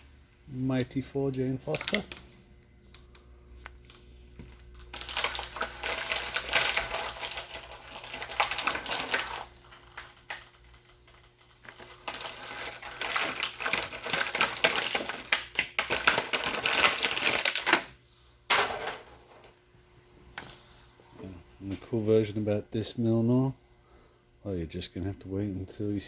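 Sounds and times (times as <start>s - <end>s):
toy packaging crackling: 1.6s - 2.3s, 4.6s - 17.9s.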